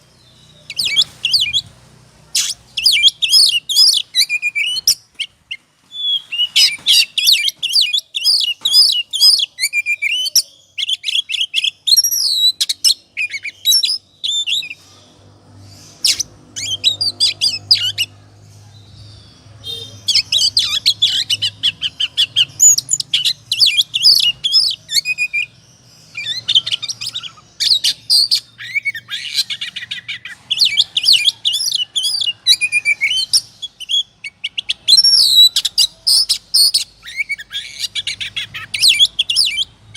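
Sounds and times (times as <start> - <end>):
bird singing whistles and trills: 2.4 - 5.1, 5.9 - 14.8, 19.6 - 39.7.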